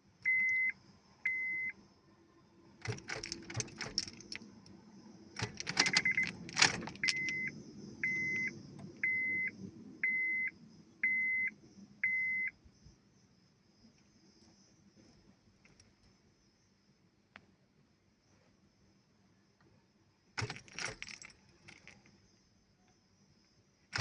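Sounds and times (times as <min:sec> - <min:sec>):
car warning chime beeping: 0:00.3 - 0:01.8, 0:05.7 - 0:12.5
keys jangling: 0:02.8 - 0:04.4, 0:05.4 - 0:07.3, 0:20.4 - 0:22.1.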